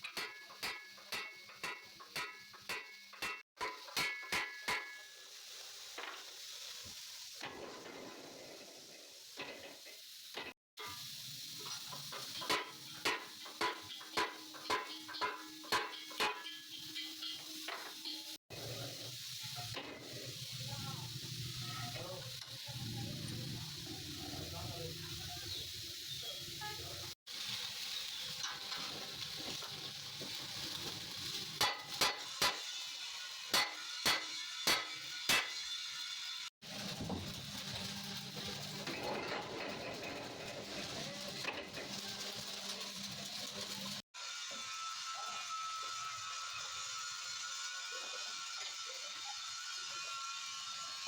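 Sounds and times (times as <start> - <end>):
steady hiss: 0.0 - 32.7
arc welding sizzling crackle: 0.0 - 51.0
hammer blows on steel: 33.5 - 35.7.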